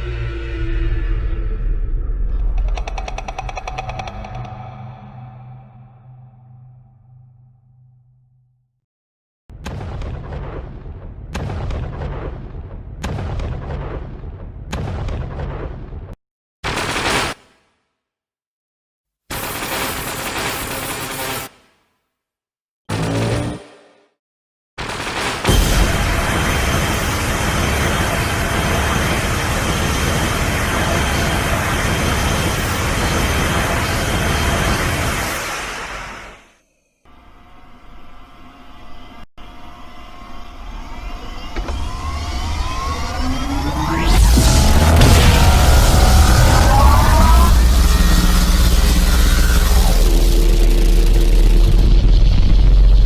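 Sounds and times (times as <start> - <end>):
booming explosion blasts: 9.5 - 16.2, 44.0 - 49.0
faint high whine: 36.9 - 44.2
loud rushing noise: 42.3 - 51.5.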